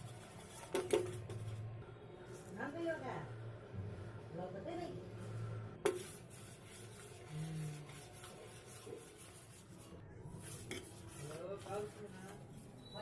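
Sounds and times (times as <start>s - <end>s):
faint scraping and rubbing: 5.1s - 13.0s.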